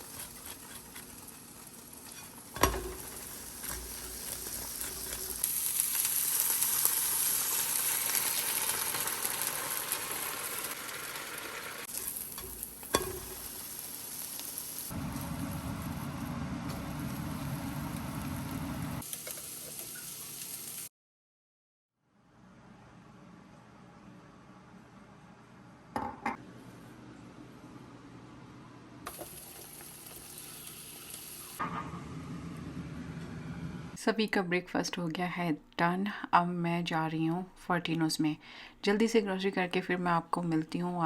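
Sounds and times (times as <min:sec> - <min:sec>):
food sizzling in a pan: 0:00.0 - 0:20.9, 0:29.1 - 0:31.6
low rumble: 0:31.6 - 0:34.0.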